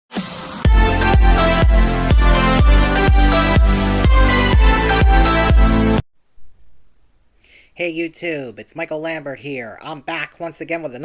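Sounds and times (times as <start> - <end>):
electronic dance music: 0.1 - 6.0
heavy kick drum: 0.7 - 5.7.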